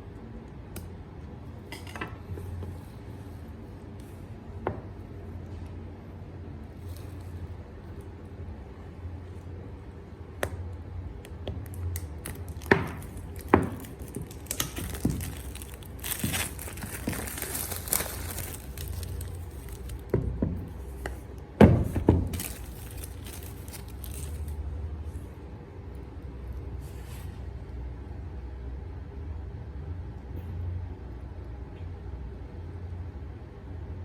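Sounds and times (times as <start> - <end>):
plastic and cardboard crinkling: 11.5 - 24.6
packaging crackling: 11.6 - 20.2, 22.0 - 24.6.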